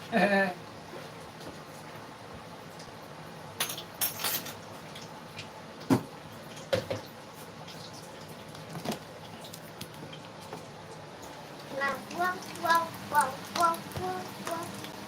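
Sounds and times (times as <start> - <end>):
kitchen utensils knocking and clinking: 3.6 - 4.6.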